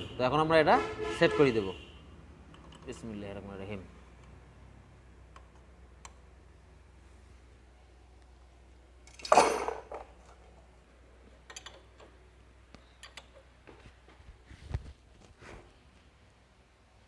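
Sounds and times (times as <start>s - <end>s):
metal tools clattering: 9.1s - 10.3s.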